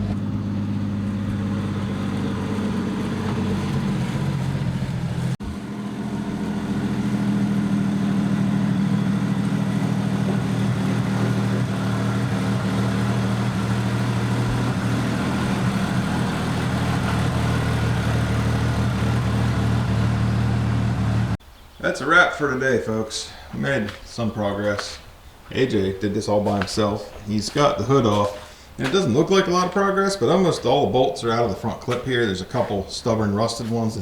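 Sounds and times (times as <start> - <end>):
truck engine idling: 0.0 - 21.4.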